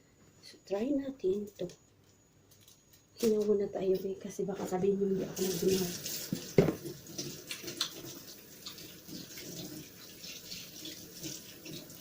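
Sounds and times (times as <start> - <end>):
tap water running: 5.2 - 12.0
knock: 6.6 - 6.9.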